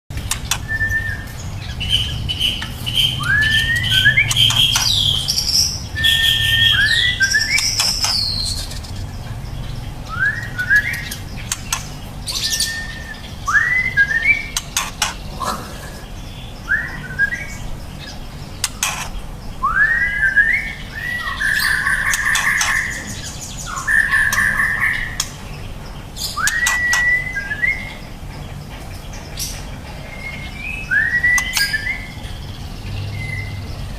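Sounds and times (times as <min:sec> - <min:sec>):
sharp clicks: 0:00.2 - 0:00.7, 0:10.8 - 0:12.0, 0:14.6 - 0:15.2, 0:18.6 - 0:19.1
bird whistling song: 0:00.3 - 0:09.0, 0:10.0 - 0:15.2, 0:16.4 - 0:25.6, 0:26.2 - 0:28.2, 0:29.4 - 0:33.7.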